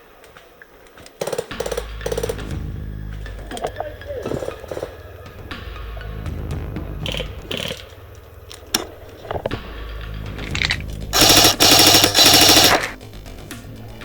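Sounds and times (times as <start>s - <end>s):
airsoft rifle rapid shots: 1.2s - 2.5s, 10.5s - 13.0s.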